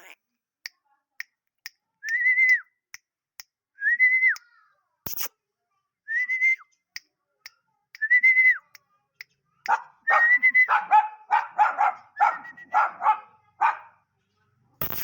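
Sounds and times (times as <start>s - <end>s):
high whistle-like calls: 9.7s - 11.1s, 12.1s - 13.0s
dog barking fast: 9.7s - 14.0s.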